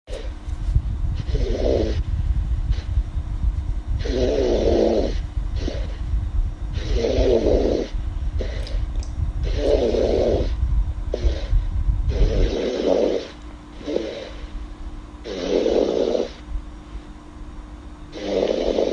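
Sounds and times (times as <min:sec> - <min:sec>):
steady low rumble: 0:00.1 - 0:18.9
girl snoring: 0:01.2 - 0:02.0, 0:04.0 - 0:06.0, 0:06.8 - 0:08.8, 0:09.4 - 0:14.6, 0:15.2 - 0:16.4, 0:18.1 - 0:18.9.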